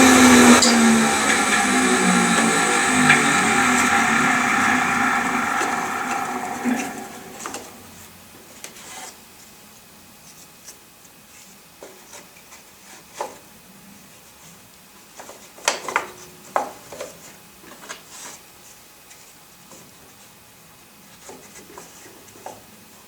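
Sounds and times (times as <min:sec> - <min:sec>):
power tool motor: 0:00.0 - 0:07.8
wood rubbing: 0:00.0 - 0:07.8.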